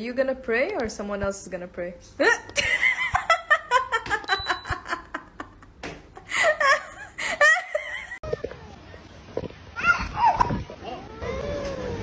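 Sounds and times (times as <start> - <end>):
high-pitched laughter: 6.2 - 8.8.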